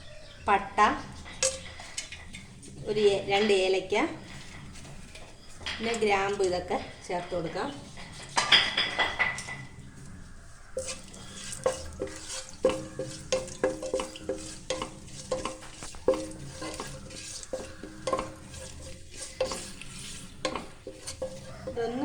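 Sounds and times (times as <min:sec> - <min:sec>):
spoon knocking and scraping pan: 0:01.0 - 0:22.0
spices sizzling in oil: 0:07.5 - 0:22.0.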